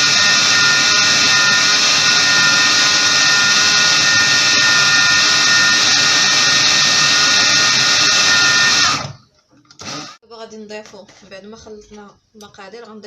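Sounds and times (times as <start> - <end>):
electric mixer whining: 0.0 - 10.2.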